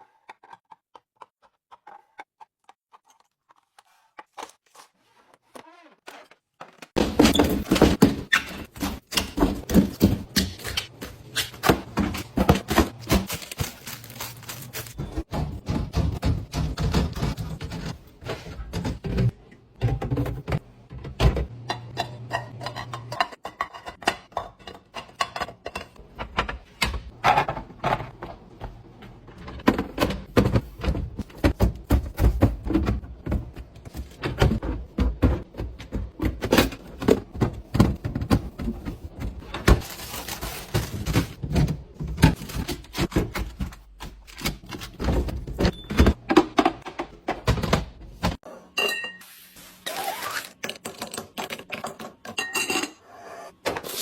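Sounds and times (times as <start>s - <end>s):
containers clicking and thunking: 50.6s - 52.5s.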